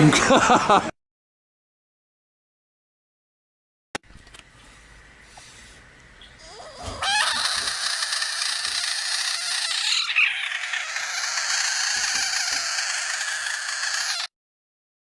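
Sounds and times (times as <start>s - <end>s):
poultry clucking and squawking: 6.4s - 14.3s.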